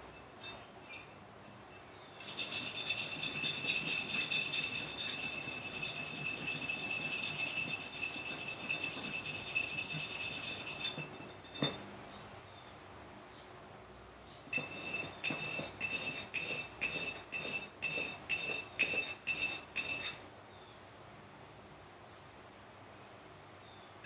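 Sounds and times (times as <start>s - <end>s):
abrasive rubbing on rusty metal: 2.2s - 11.5s, 14.6s - 20.2s.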